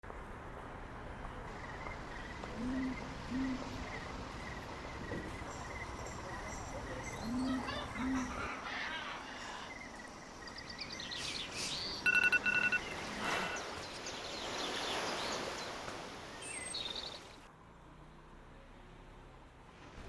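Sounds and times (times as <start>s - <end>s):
crickets chirping: 1.5s - 8.5s, 9.4s - 17.0s.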